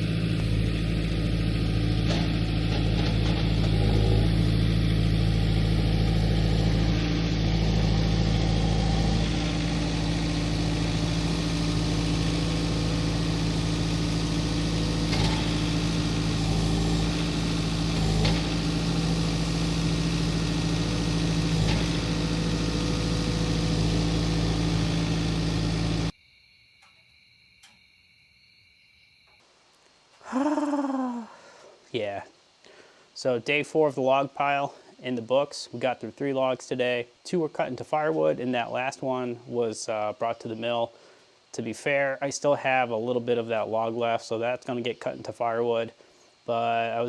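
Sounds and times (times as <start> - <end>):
tractor diesel engine running: 0.0 - 26.1.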